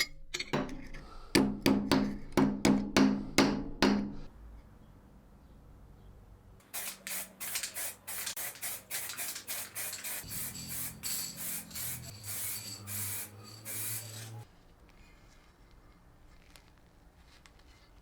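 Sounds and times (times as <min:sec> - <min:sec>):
short hissing strokes: 0:06.7 - 0:14.5.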